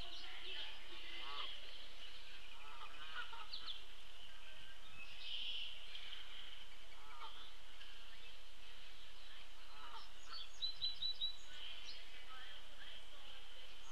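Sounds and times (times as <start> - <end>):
harsh bird calls: 0.0 - 8.4
wild birds calling and singing: 0.0 - 13.9.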